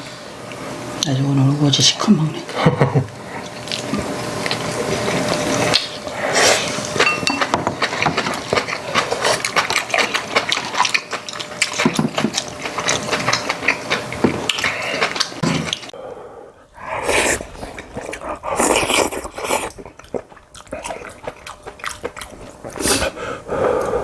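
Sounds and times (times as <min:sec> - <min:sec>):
slurping soup: 0:03.2 - 0:16.0
spoons clicking against bowls: 0:07.0 - 0:07.8.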